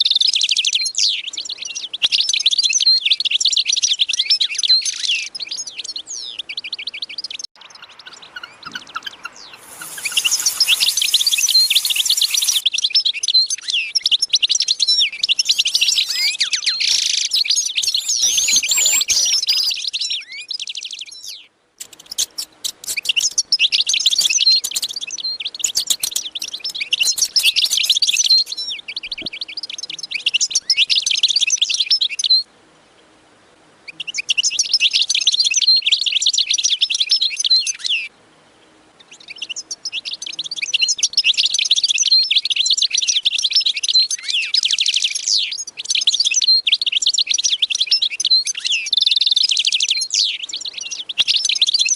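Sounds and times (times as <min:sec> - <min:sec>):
small birds chirping: 0:00.0 - 0:32.4, 0:39.0 - 0:51.9.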